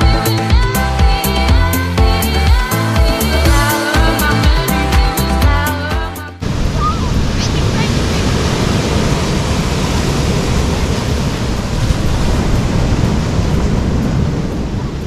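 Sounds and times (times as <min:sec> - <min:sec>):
ocean surf: 0:00.0 - 0:15.0
wind buffeting microphone: 0:06.4 - 0:15.0.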